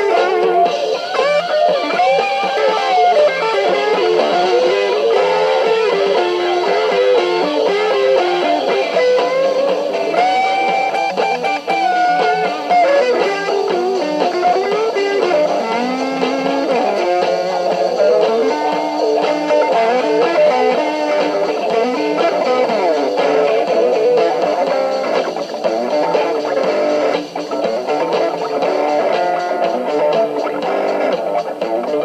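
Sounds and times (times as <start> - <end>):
electric guitar solo: 0.0 - 32.0
rock band playing: 0.0 - 32.0.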